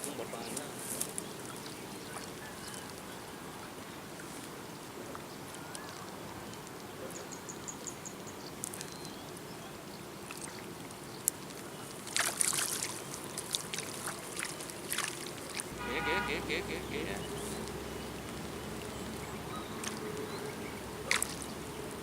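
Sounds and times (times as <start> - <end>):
water lapping and trickling: 0.0 - 22.0.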